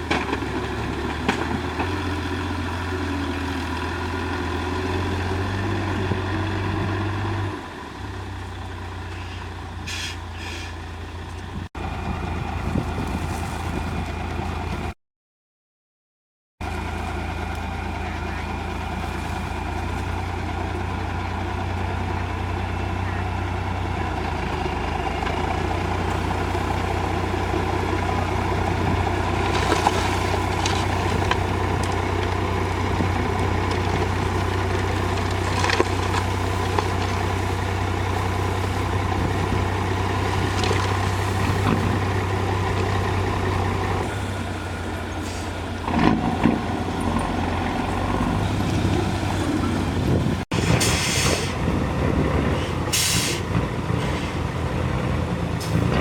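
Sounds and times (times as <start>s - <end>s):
heavy diesel engines running: 0.0s - 15.0s, 16.6s - 56.0s
short hisses: 9.3s - 10.8s, 50.6s - 51.6s, 52.9s - 54.4s.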